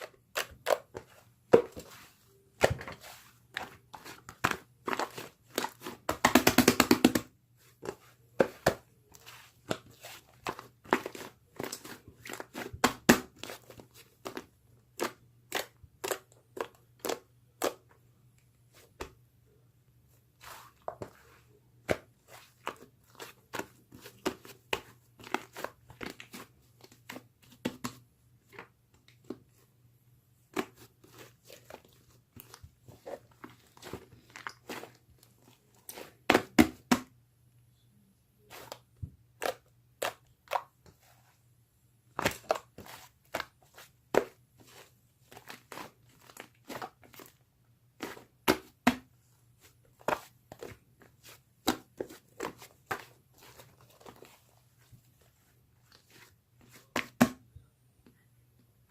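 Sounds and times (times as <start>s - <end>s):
faint low hum: 37.1s - 42.2s.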